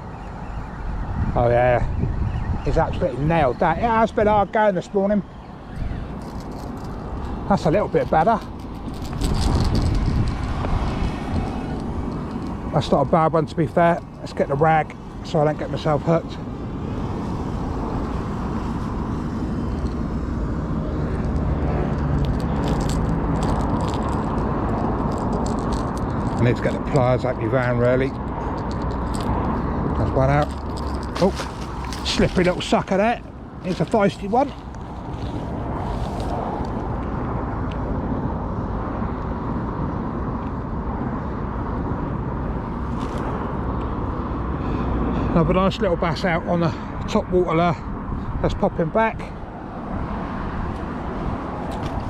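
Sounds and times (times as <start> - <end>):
wind rumble on microphone: 0.0 - 45.3, 46.9 - 52.0
clicks and rustles of cloth: 30.4 - 33.0.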